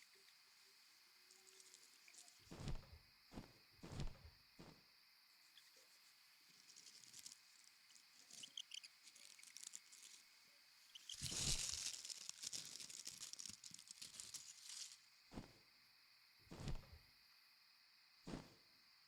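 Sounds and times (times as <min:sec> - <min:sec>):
dry leaves rustling: 0:01.3 - 0:02.6, 0:05.8 - 0:10.3, 0:10.9 - 0:15.1.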